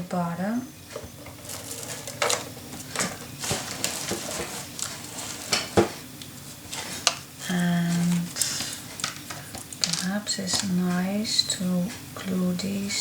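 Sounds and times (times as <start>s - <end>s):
paper and tape rustling: 1.4s - 5.8s.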